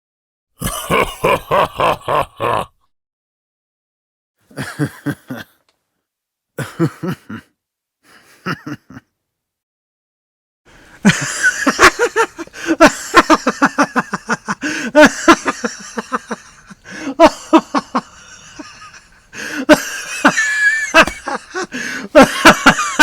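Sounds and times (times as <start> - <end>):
man laughing: 0.6 - 2.9, 4.5 - 5.6, 6.6 - 7.5, 8.1 - 9.0, 11.0 - 23.0.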